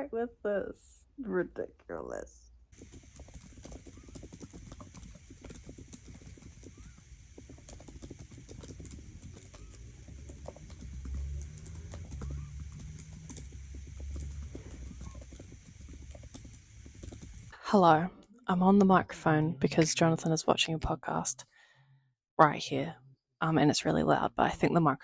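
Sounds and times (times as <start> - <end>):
mechanical keyboard typing: 2.8 - 17.6.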